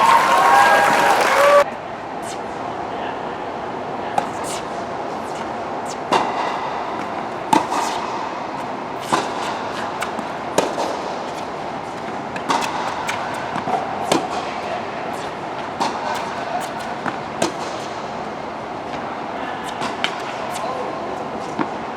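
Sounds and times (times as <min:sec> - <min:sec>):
steady background hiss: 0:00.9 - 0:21.9
ball being struck: 0:05.3 - 0:18.1.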